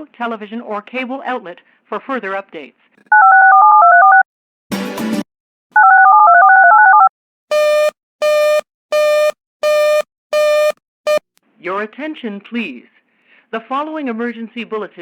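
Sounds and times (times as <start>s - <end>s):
paired dialing-like beeps: 3.1s - 4.2s, 5.8s - 11.2s
harsh buzzing beeps: 5.8s - 11.2s.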